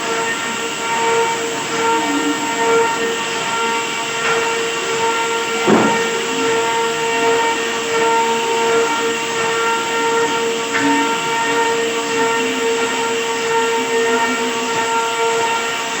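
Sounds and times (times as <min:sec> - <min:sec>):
router spindle whining: 0:00.0 - 0:16.0
hiss of wood cutting: 0:05.4 - 0:06.6.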